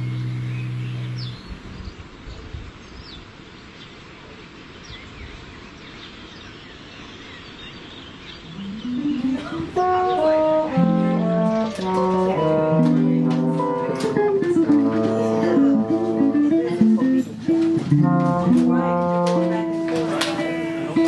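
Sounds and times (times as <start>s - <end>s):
held low musical tone: 0.0s - 1.8s, 8.5s - 21.0s
birds chirping: 0.0s - 2.1s, 2.8s - 12.8s
outdoor hiss: 0.0s - 5.0s.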